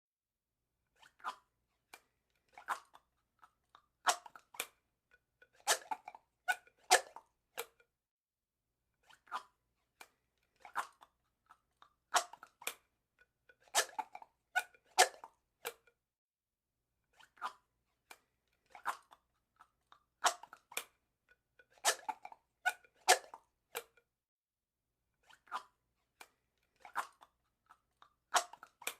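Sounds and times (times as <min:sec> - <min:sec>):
straw squeaking: 0:05.5 - 0:07.8, 0:13.5 - 0:15.9, 0:21.6 - 0:24.0.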